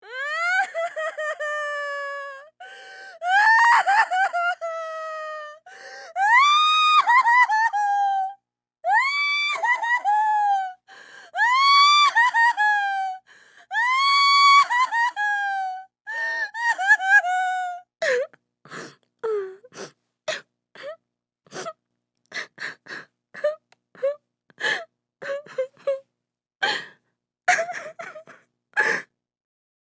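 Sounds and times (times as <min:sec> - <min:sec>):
woman crying and sobbing: 0:00.0 - 0:18.3, 0:22.4 - 0:26.0, 0:27.5 - 0:29.1.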